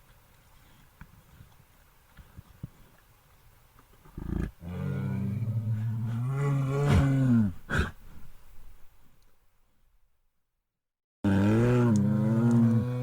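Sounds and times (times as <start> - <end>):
bear grunt: 4.2 - 8.0, 11.3 - 13.0
bear roaring: 4.2 - 8.0, 11.2 - 13.0
bear huff: 5.7 - 8.3.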